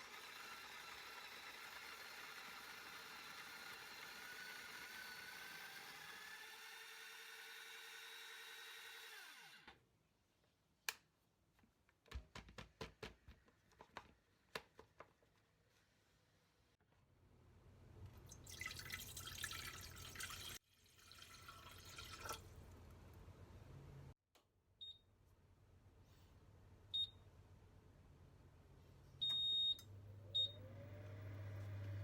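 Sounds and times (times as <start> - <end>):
coffee grinder running: 0.0 - 9.7.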